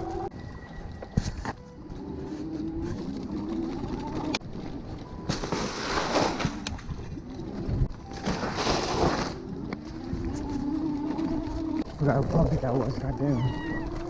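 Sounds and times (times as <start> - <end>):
bicycle jolting over bumpy ground: 0.0 - 14.0
wavering sliding tone: 0.0 - 14.0.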